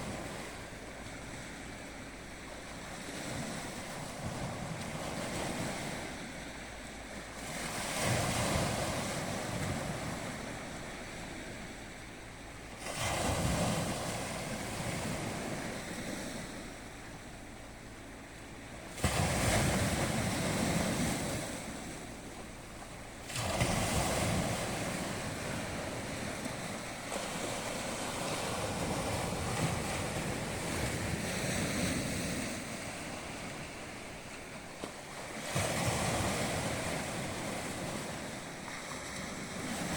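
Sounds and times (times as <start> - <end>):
waves breaking: 0.0 - 39.9.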